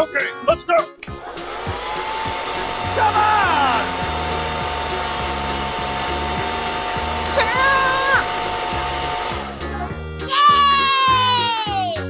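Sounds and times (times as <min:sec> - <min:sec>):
background music with low beat: 0:00.0 - 0:12.0
motor blower whirring: 0:01.1 - 0:09.9
high-pitched vocal cry: 0:10.3 - 0:12.0.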